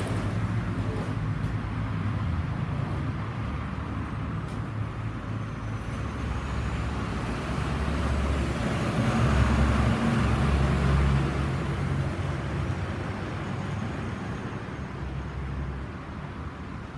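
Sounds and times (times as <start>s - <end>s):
vehicle engine: 0.0s - 16.6s
road noise: 0.0s - 16.9s.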